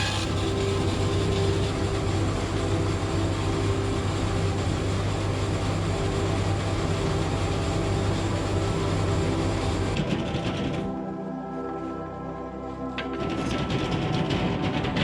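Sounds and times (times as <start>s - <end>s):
workshop machine droning: 0.0s - 11.2s.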